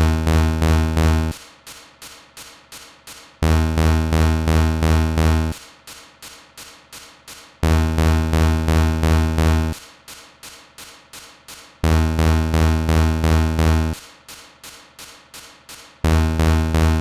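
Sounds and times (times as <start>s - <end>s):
loud pulsing buzzes: 0.0s - 1.4s, 3.4s - 5.6s, 7.6s - 9.8s, 11.8s - 14.0s, 16.0s - 17.0s.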